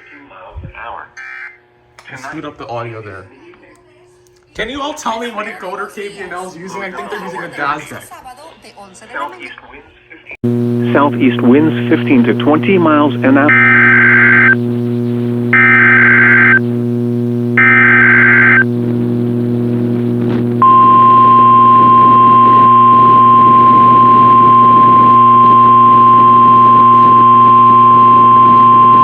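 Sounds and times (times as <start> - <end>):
buzzy data tones: 10.4 - 29.0
steady low hum: 10.4 - 29.0
steady warning alarm tone: 10.5 - 18.8, 20.6 - 29.0.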